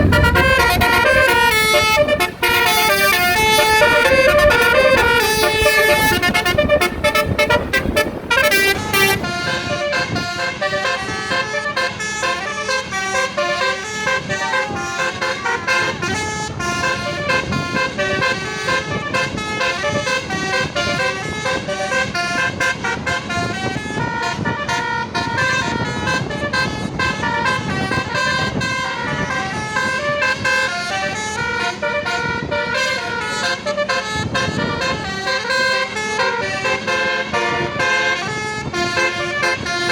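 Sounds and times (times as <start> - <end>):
musical bus horns playing melody: 0.0 - 39.9.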